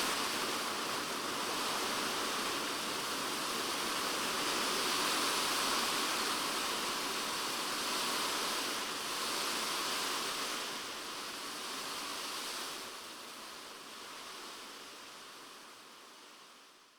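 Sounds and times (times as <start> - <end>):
rain on a plastic roof: 0.0 - 16.8.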